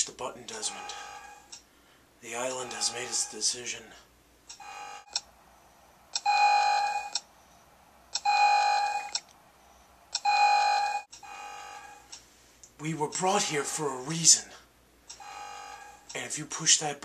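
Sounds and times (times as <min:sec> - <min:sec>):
long loud alarm tones: 0:00.5 - 0:01.5, 0:02.3 - 0:03.6, 0:04.6 - 0:05.2, 0:06.2 - 0:07.2, 0:08.2 - 0:09.2, 0:10.1 - 0:12.1, 0:15.2 - 0:16.1.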